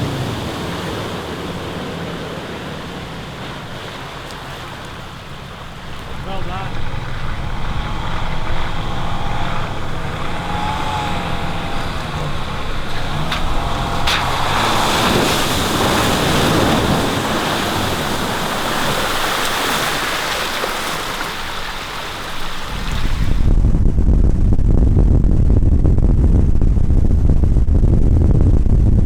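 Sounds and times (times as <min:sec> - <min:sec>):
vehicle engine running: 0:00.0 - 0:29.0.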